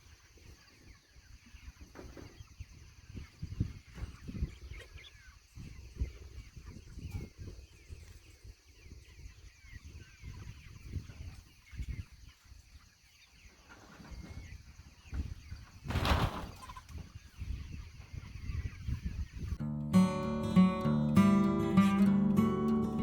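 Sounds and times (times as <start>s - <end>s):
chickens clucking and peeping: 0.0s - 19.6s.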